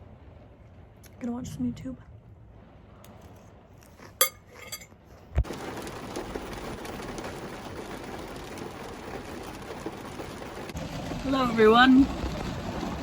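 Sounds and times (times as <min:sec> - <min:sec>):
cutlery clinking on a dish: 0:04.2 - 0:04.9
heavy rain: 0:05.5 - 0:13.0.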